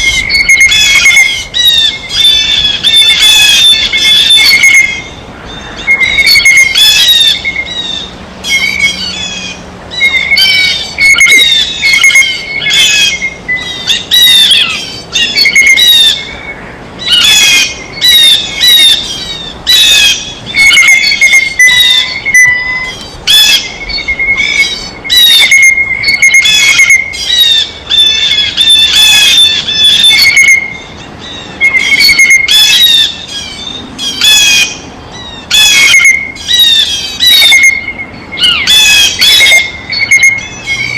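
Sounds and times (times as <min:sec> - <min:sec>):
blue jays squawking: 0:00.0 - 0:16.4.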